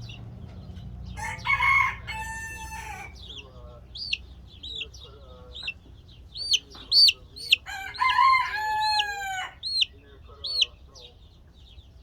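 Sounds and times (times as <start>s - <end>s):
chicks peeping: 0.0s - 12.0s
rooster crowing: 1.2s - 3.2s, 7.6s - 9.8s.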